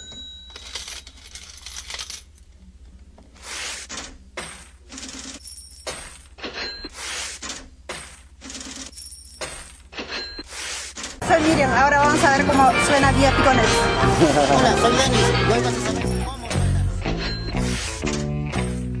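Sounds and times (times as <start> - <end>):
coins jingling and clinking: 0.0 - 2.3, 5.0 - 6.9, 8.4 - 10.4.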